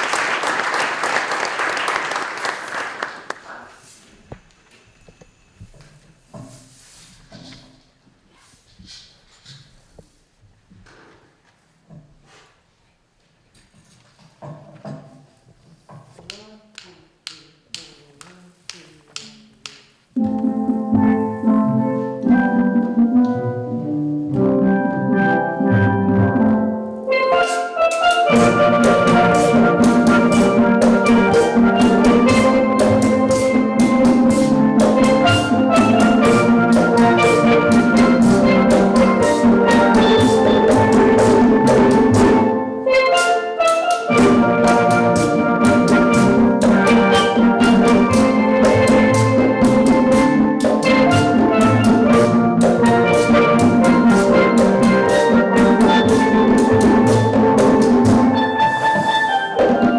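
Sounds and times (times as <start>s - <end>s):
steel drum band playing: 20.2s - 59.9s.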